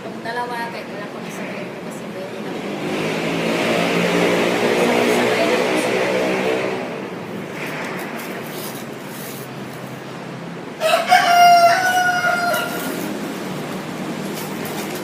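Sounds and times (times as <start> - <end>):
steady background noise: 0.0 - 15.0
rooster crowing: 10.8 - 13.2.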